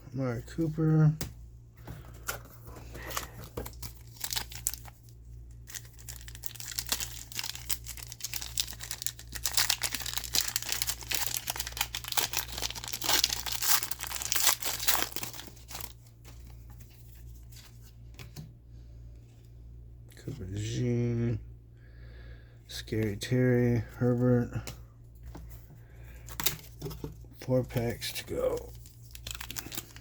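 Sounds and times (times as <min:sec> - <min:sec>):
wrapper tearing and crinkling: 0:03.0 - 0:16.1, 0:28.1 - 0:30.0.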